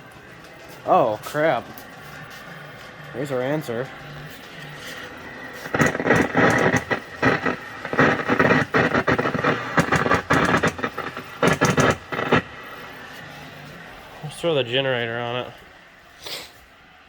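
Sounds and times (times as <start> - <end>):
high-voltage arcing crackle: 0.1 - 13.4.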